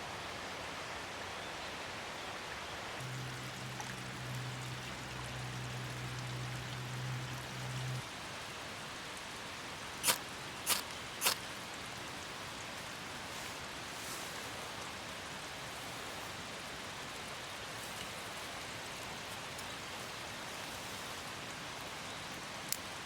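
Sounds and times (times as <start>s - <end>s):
light rain falling: 0.0s - 23.0s
low steady hum: 3.0s - 12.4s
sharp clicks: 10.0s - 11.4s.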